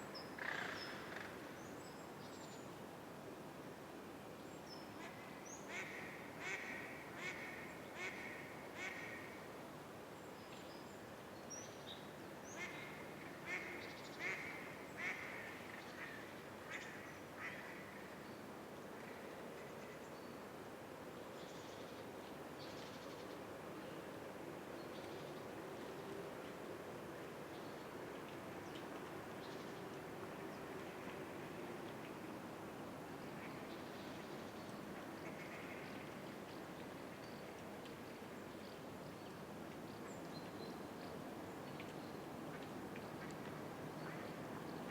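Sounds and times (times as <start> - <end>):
faint outdoor hiss: 0.0 - 44.9
steady rush of background noise: 12.2 - 44.9.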